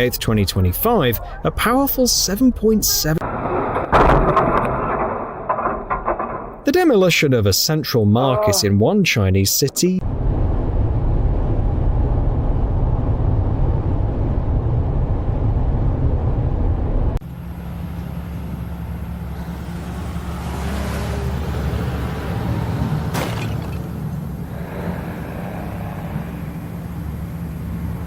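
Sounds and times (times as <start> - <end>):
building demolition rumble: 0.0 - 8.9, 10.0 - 28.0
low mechanical hum: 10.0 - 28.0.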